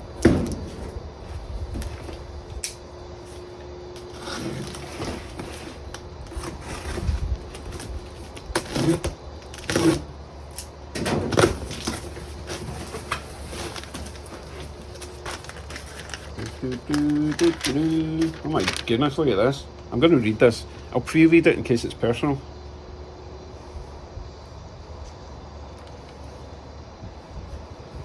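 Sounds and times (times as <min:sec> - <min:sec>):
packaging paper rustling: 0:04.0 - 0:10.1, 0:11.2 - 0:19.2.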